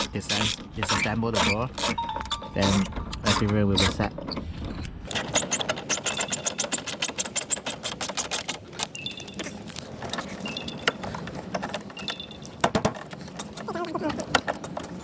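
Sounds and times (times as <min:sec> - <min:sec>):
ratchet tool clicking: 0:05.1 - 0:11.0
metallic clicks and clinks: 0:05.1 - 0:15.0.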